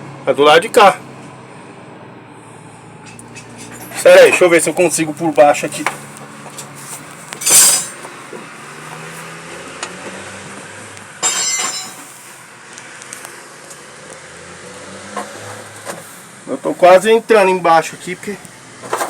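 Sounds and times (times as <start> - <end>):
loud scrapes under truck: 2.5 - 4.7, 5.5 - 10.1, 15.0 - 16.3, 18.8 - 19.0.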